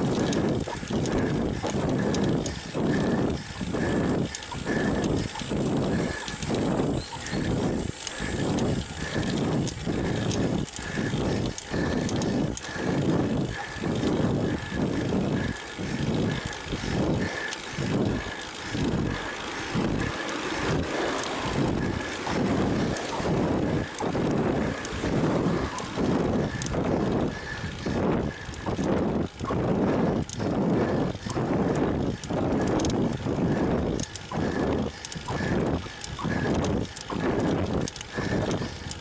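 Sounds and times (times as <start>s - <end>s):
heavy rhythmic breathing: 0.0s - 39.0s.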